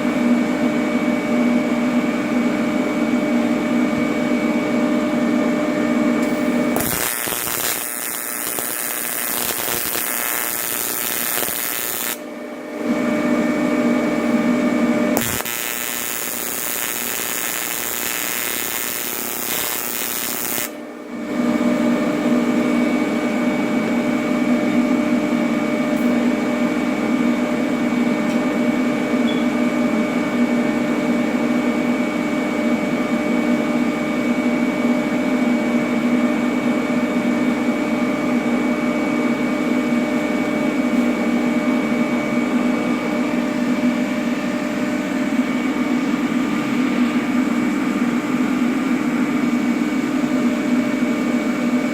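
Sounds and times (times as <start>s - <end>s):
welding arc buzzing: 6.2s - 12.3s, 15.1s - 20.8s.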